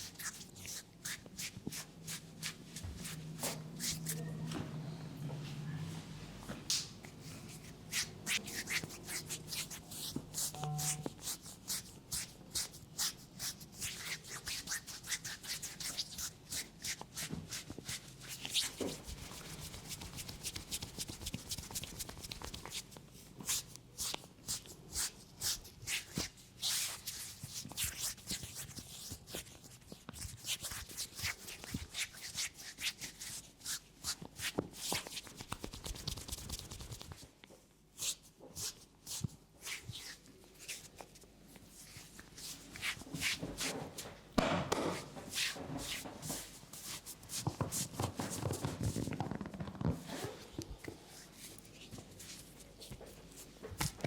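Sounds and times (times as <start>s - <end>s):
hands rubbing hair and skin: 6.7s - 37.3s, 45.0s - 54.0s.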